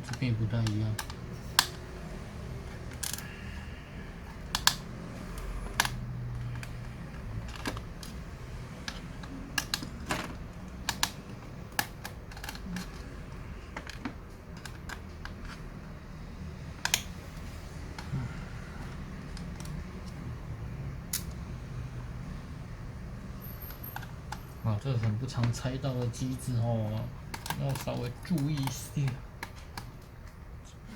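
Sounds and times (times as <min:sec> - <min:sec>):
screwdriver clicking on plastic case: 0:00.1 - 0:02.0, 0:04.2 - 0:13.1, 0:13.7 - 0:15.6, 0:26.9 - 0:30.4.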